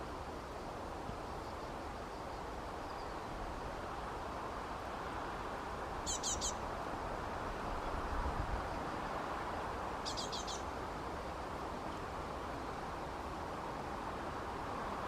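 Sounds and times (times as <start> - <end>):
small bird chirping: 6.1 - 6.6, 10.0 - 10.6.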